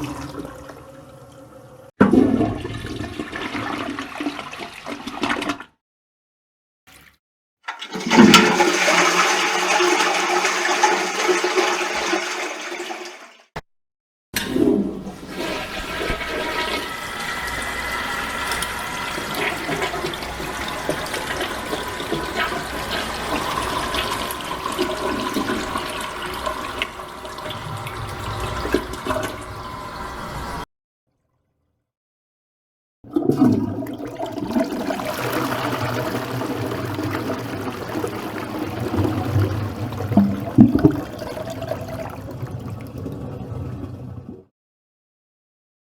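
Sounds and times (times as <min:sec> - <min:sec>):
toilet flushing: 0:00.0 - 0:05.6, 0:07.7 - 0:13.6, 0:14.4 - 0:30.7, 0:33.1 - 0:44.5
water running steadily: 0:15.0 - 0:30.6, 0:34.1 - 0:44.3.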